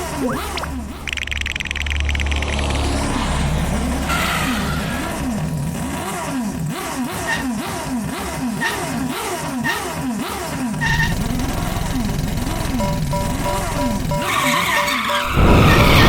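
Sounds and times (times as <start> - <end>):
motorcycle engine revving: 0.0 - 16.0
deep steady hum: 11.0 - 14.4.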